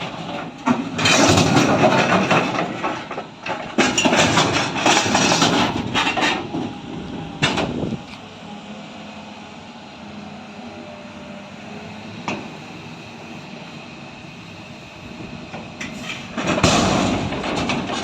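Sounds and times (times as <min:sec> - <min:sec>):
loud clattering rush with knocks: 0:00.0 - 0:06.7, 0:16.3 - 0:18.0.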